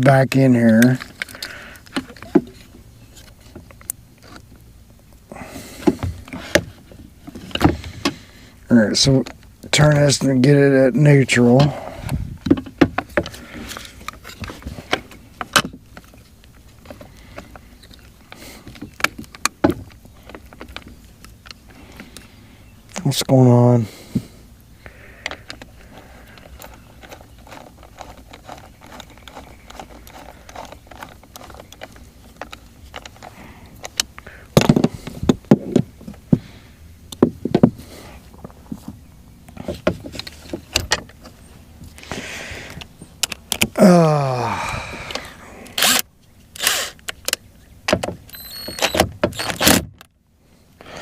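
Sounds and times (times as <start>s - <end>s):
clicks and rattles of control box: 25.2s - 36.3s, 39.5s - 41.4s, 42.7s - 43.8s.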